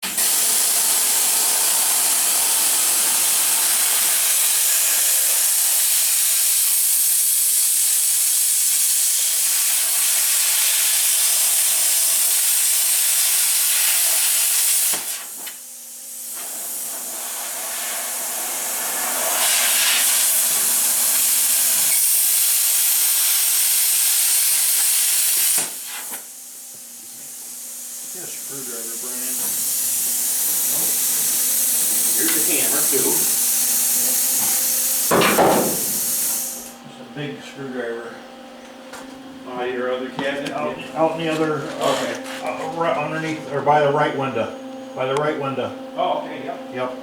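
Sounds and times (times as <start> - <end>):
loud steady hiss: 0.0 - 36.8.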